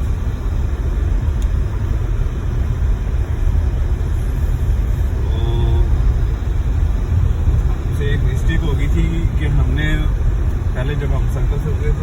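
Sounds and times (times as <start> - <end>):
car interior rumble: 0.0 - 12.0.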